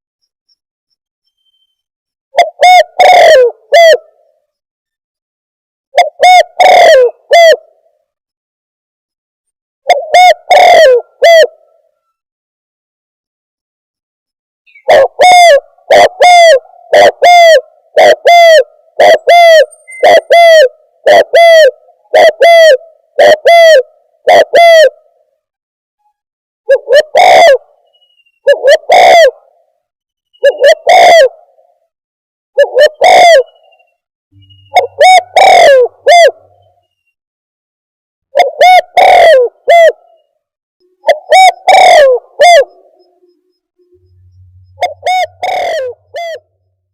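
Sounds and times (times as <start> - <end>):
dove cooing: 2.4 - 4.3, 6.0 - 7.8, 9.9 - 12.0, 14.8 - 25.1, 26.7 - 27.7, 28.4 - 29.6, 30.4 - 31.7, 32.6 - 33.7, 34.4 - 36.7, 38.3 - 40.2, 41.0 - 46.6.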